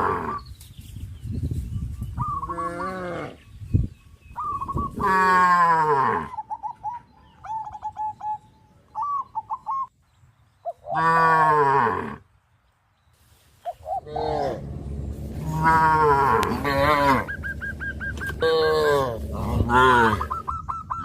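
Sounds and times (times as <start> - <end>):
cows mooing: 5.0 - 6.4, 11.0 - 12.2, 14.0 - 20.4
high bird chirps: 16.8 - 21.0.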